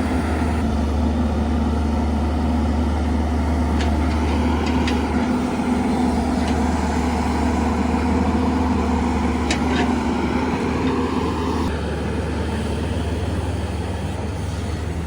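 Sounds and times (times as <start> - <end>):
heavy diesel engine droning: 0.0 - 15.0.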